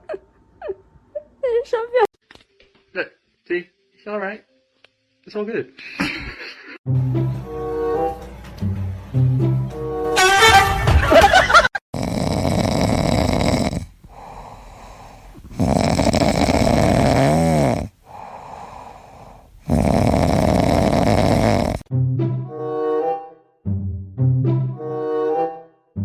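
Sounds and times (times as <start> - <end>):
pet snoring: 11.9 - 21.9.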